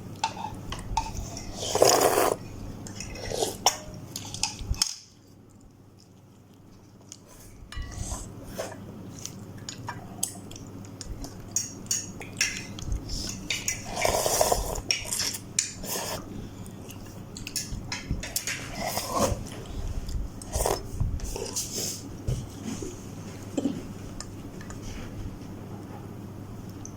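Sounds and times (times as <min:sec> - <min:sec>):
cutlery clinking against bowl: 0:07.7 - 0:08.1, 0:11.5 - 0:14.1.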